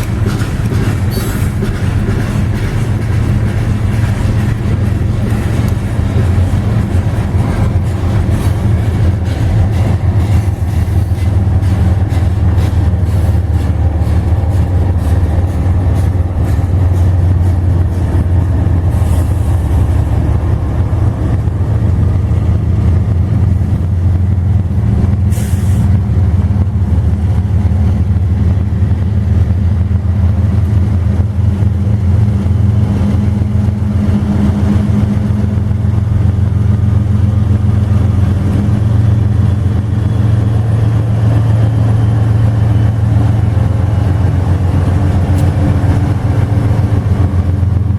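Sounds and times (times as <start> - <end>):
locomotive engine drone: 0.0 - 47.9.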